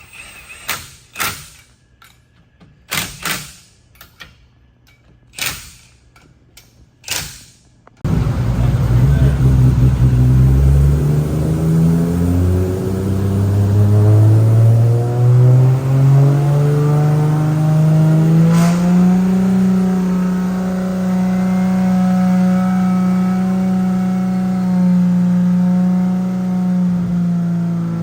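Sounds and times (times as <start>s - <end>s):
car engine revs climbing: 8.0s - 28.0s.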